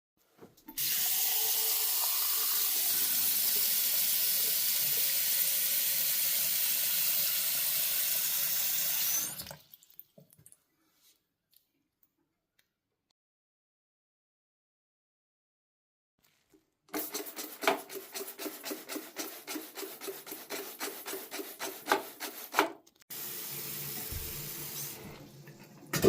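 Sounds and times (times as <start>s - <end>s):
faucet water running into sink: 0.7s - 10.1s, 23.1s - 26.0s.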